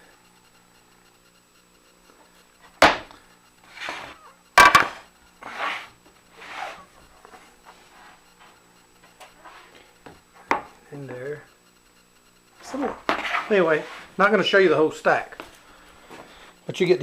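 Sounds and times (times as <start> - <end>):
wooden boards knocking: 2.8 - 3.1, 3.9 - 5.0
wood sliding on wood: 3.7 - 4.2, 4.8 - 8.2, 12.8 - 14.2.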